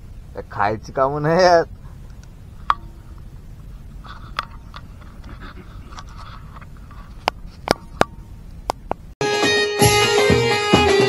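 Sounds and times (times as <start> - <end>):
steady low rumble: 0.0 - 9.2.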